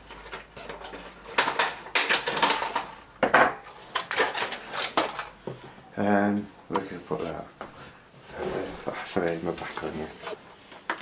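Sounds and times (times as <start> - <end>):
hard objects clattering and rattling: 0.0 - 5.4.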